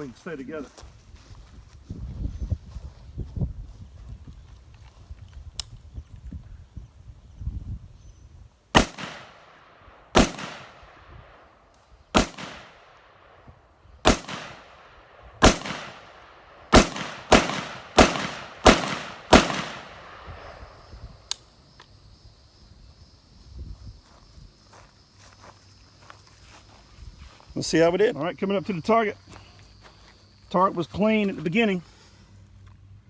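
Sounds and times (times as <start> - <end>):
rifle shots: 8.8 - 11.4, 12.1 - 13.4, 14.0 - 20.7.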